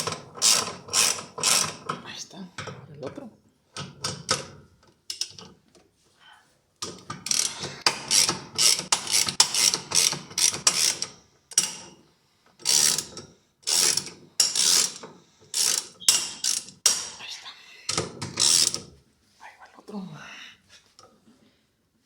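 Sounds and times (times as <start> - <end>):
hand ratchet clicking: 0.4 - 1.8, 7.2 - 11.8, 12.6 - 17.1, 17.9 - 18.8.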